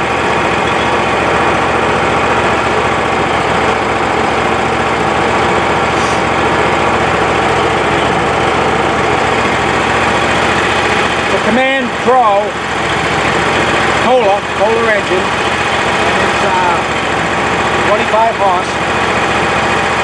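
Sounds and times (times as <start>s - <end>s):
engine idling: 0.0s - 20.0s.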